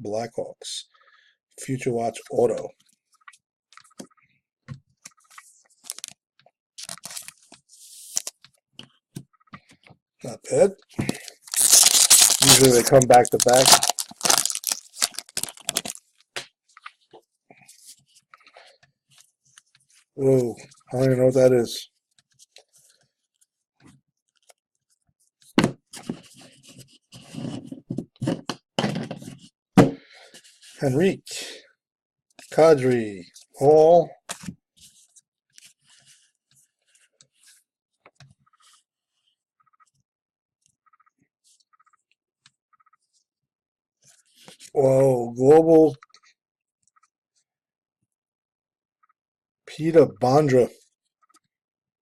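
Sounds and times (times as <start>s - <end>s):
foil wrapper crinkling: 5.9s - 6.1s, 11.1s - 16.0s
cards rubbing and scraping: 6.8s - 8.4s, 11.1s - 16.1s.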